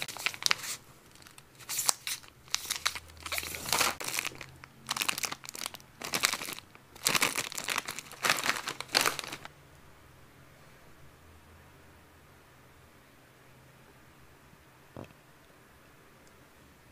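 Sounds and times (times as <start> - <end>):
crinkly packaging crackling: 0.0 - 9.5.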